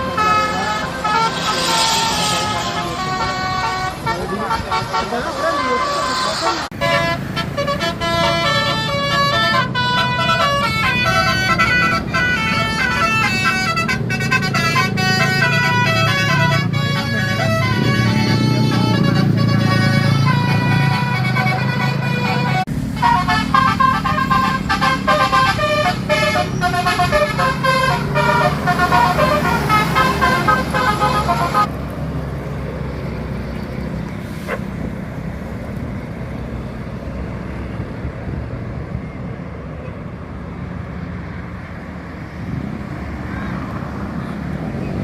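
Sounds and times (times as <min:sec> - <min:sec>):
multi-tone bus horn tune: 0:00.0 - 0:31.7
bus engines rumbling: 0:00.0 - 0:45.0
traffic: 0:00.0 - 0:45.0.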